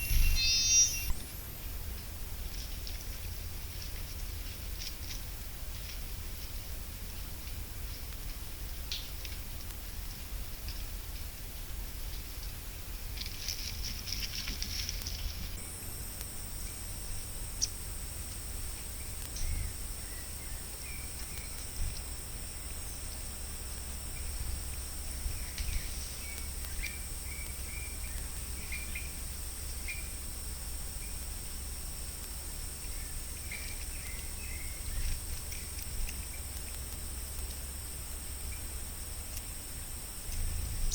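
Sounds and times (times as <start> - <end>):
faint short chirps: 0.0 - 1.3
high-pitched whine: 0.0 - 4.8, 13.8 - 40.9
crackling rustle: 0.0 - 40.9
low steady rumble: 0.0 - 40.9.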